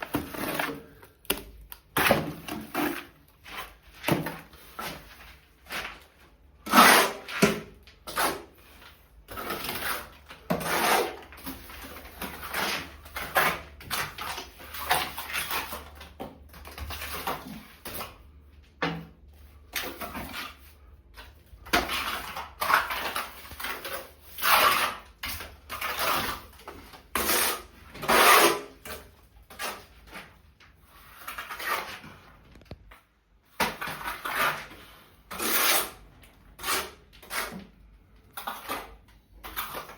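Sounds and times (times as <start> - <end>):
hand tool scraping and knocking: 0.0 - 8.5.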